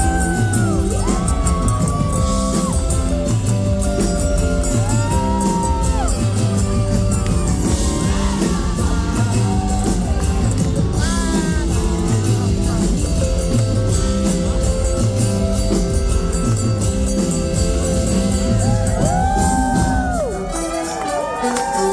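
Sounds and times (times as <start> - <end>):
person singing: 0.0 - 6.9, 7.6 - 15.1
live band playing loudly: 0.0 - 21.9.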